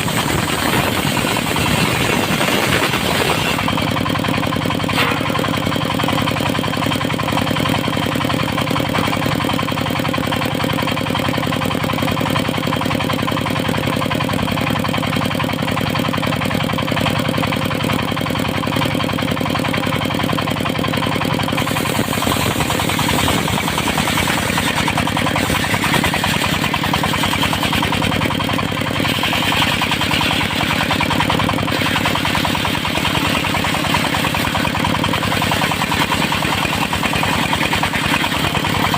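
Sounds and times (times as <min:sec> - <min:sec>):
circular saw sawing wood: 0:00.0 - 0:11.2, 0:21.5 - 0:38.9
engine drone: 0:00.0 - 0:38.9.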